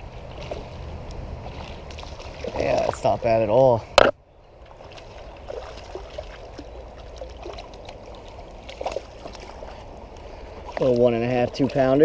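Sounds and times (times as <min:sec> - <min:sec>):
creek water running: 0:00.0 - 0:12.0
water trickling and splashing: 0:00.0 - 0:12.0.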